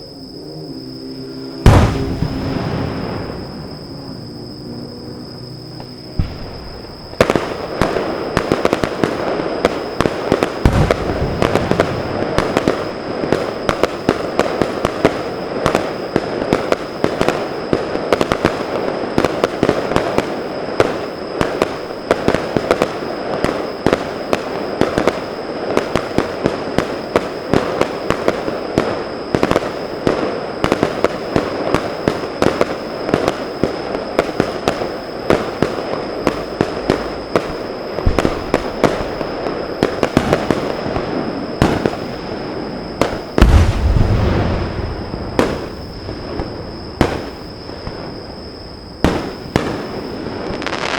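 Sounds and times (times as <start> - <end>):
deep firework boom: 1.6 - 9.3, 10.5 - 13.9, 36.7 - 42.0, 43.0 - 49.9
fireworks crackling: 1.6 - 50.9.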